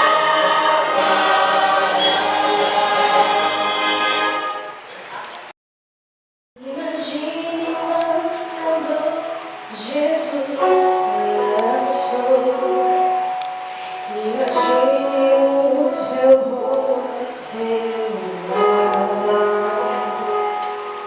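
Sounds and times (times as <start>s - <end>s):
voices singing: 0.0s - 4.8s
musical accompaniment: 0.0s - 5.0s, 7.6s - 21.0s.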